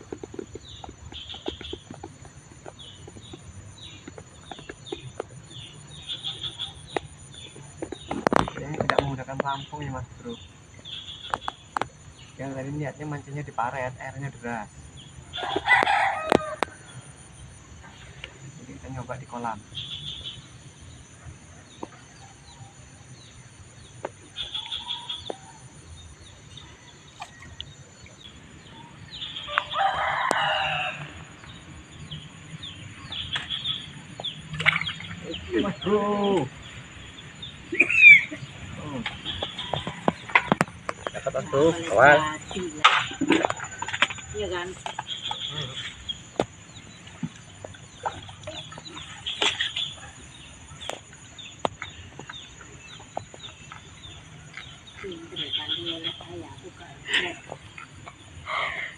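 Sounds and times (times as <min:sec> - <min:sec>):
birds clucking and chirping: 0:00.0 - 0:58.9
rooster crowing: 0:15.4 - 0:16.8, 0:29.4 - 0:31.3.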